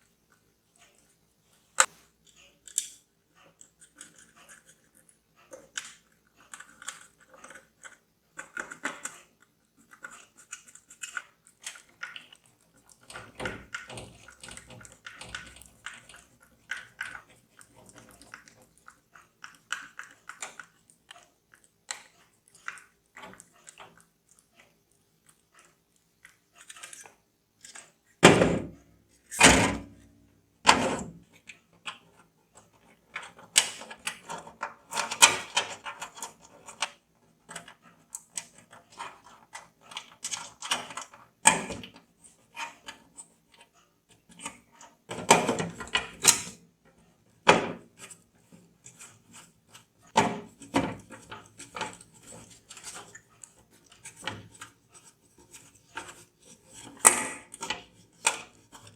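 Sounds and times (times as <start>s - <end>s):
computer hardware clicks and rattles: 2.2s - 24.7s.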